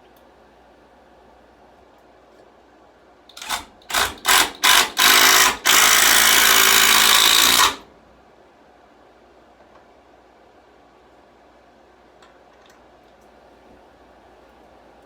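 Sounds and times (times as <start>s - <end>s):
cordless drill driving screw: 3.4s - 7.8s.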